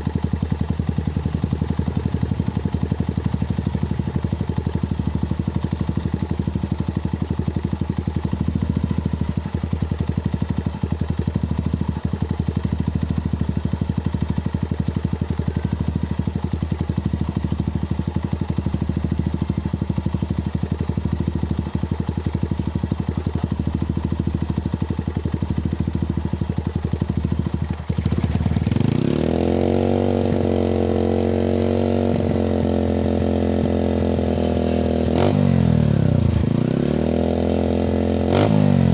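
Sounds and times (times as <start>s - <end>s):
motorcycle engine idling: 0.0s - 38.9s
engine revving: 27.9s - 38.9s.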